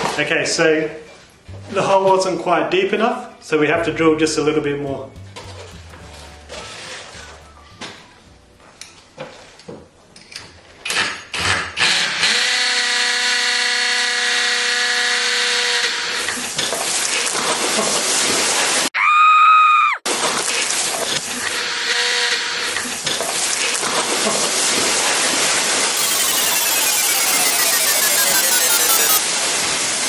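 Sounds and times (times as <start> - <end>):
loud pitched tone: 26.0 - 29.2.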